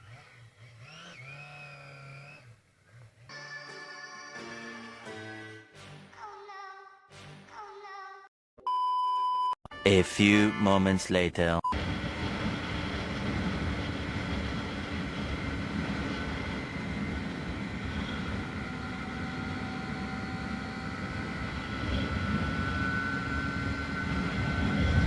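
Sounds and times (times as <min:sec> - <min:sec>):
motorcycle engine running: 0:12.1 - 0:25.0.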